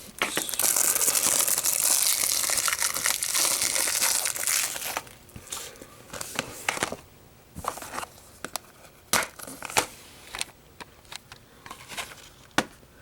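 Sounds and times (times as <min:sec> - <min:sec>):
plastic wrap crinkling: 0:00.2 - 0:05.2.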